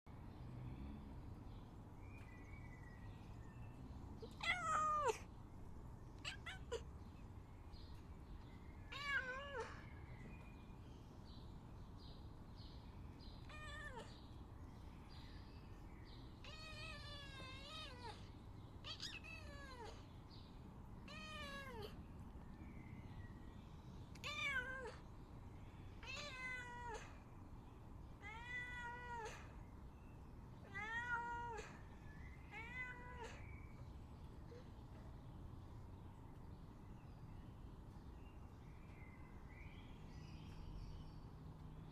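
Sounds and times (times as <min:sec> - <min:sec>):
cat meowing: 0:04.2 - 0:05.3, 0:06.2 - 0:06.9, 0:08.9 - 0:09.9, 0:13.4 - 0:14.2, 0:16.4 - 0:20.1, 0:21.0 - 0:22.0, 0:24.1 - 0:25.0, 0:26.0 - 0:27.2, 0:28.2 - 0:29.6, 0:30.6 - 0:31.9, 0:32.5 - 0:33.4.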